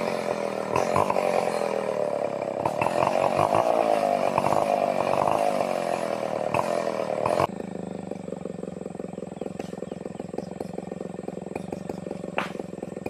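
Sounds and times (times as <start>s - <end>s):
chainsaw cutting wood: 0.0s - 13.0s
chainsaw idling: 0.0s - 13.0s.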